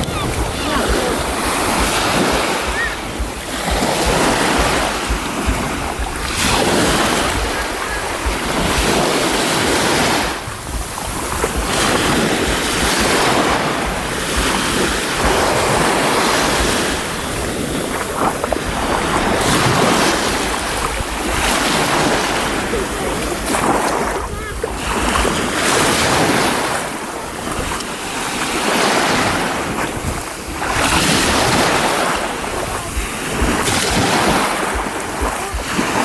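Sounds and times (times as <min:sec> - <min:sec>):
sea surf washing onto shore: 0:00.0 - 0:36.0
wind rumbling on microphone: 0:00.0 - 0:36.0.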